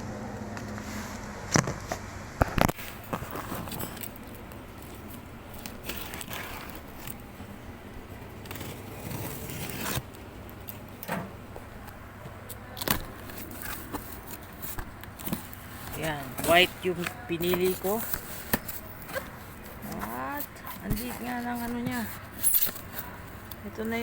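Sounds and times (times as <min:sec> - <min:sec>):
cardboard scraping and tearing: 0:00.8 - 0:04.1, 0:05.6 - 0:07.3, 0:08.4 - 0:10.1.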